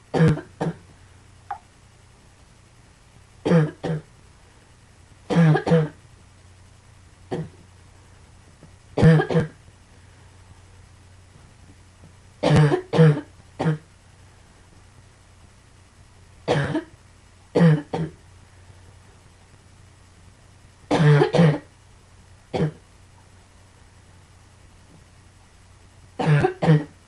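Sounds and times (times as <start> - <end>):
person coughing: 0.2 - 0.8, 3.5 - 4.1, 5.3 - 6.0, 7.3 - 7.6, 9.0 - 9.6, 12.4 - 13.9, 17.6 - 18.2, 20.9 - 21.7, 22.6 - 22.8, 26.2 - 26.9.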